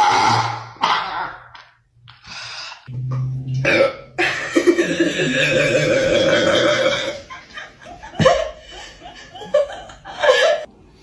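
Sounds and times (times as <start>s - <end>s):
long loud burp: 3.6s - 7.2s
laughter: 4.2s - 5.2s, 7.2s - 10.7s.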